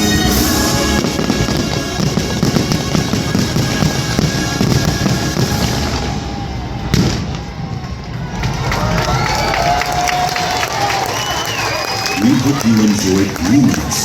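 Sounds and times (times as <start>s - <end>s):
loud show music: 0.0s - 7.4s
fireworks crackling and popping: 0.0s - 14.0s.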